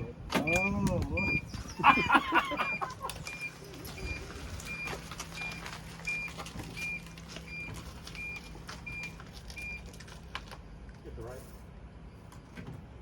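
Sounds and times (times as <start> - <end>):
vehicle warning beeps: 0.0 - 9.9
vehicle engine hum: 0.0 - 13.0.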